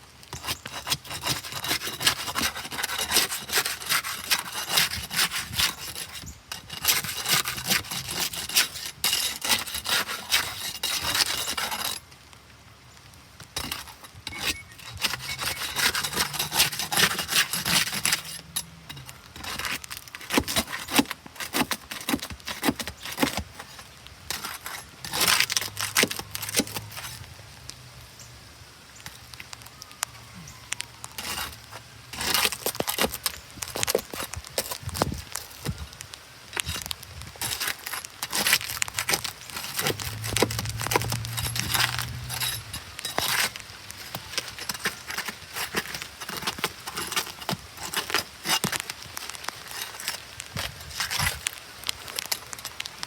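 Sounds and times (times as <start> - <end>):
hand tool rasping hard material: 0.3 - 12.0, 13.6 - 27.3, 31.1 - 35.8, 36.6 - 51.5.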